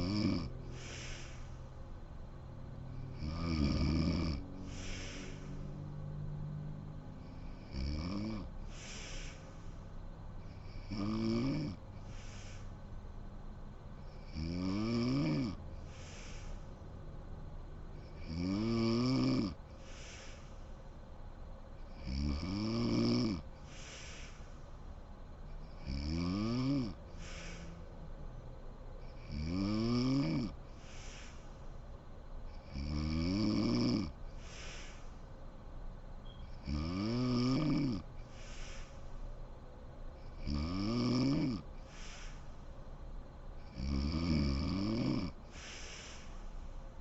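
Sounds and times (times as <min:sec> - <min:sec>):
woman snoring: 0:00.0 - 0:01.7, 0:02.8 - 0:09.6, 0:10.4 - 0:12.6, 0:14.1 - 0:16.6, 0:18.0 - 0:20.6, 0:21.9 - 0:24.5, 0:25.7 - 0:27.8, 0:29.1 - 0:31.4, 0:32.6 - 0:35.1, 0:36.5 - 0:39.0, 0:40.2 - 0:42.4, 0:43.6 - 0:46.4.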